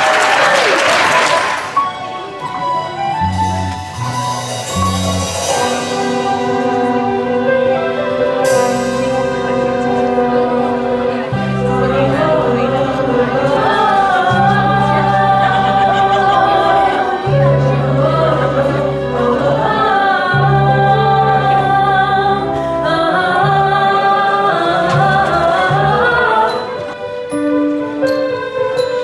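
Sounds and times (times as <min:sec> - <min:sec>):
sustained low chords: 0:02.3 - 0:27.0
group of voices singing: 0:05.0 - 0:27.4.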